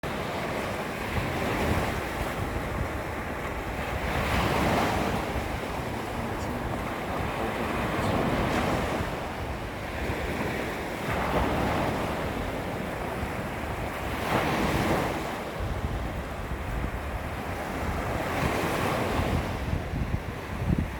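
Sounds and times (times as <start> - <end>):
small waves lapping on beach: 0.0 - 20.9
steady low rumble: 5.2 - 9.4.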